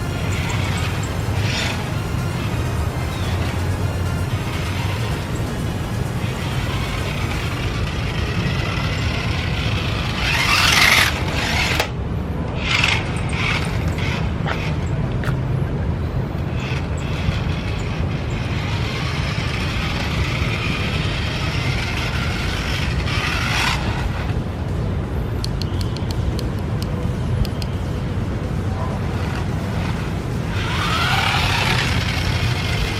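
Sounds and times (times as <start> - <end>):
toy car motor whirring: 0.0 - 15.2, 16.4 - 24.5, 29.0 - 32.9
sharp clicks: 25.4 - 27.8.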